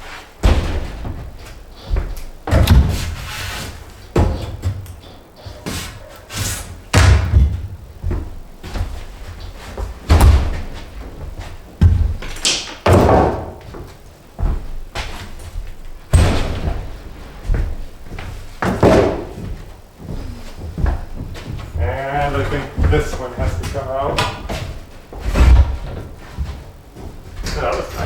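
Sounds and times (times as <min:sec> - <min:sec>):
heavy wooden board thuds: 0:00.4 - 0:03.3, 0:06.9 - 0:08.8, 0:09.8 - 0:11.0, 0:12.8 - 0:13.8, 0:16.1 - 0:19.6
wood scraping: 0:02.6 - 0:06.9.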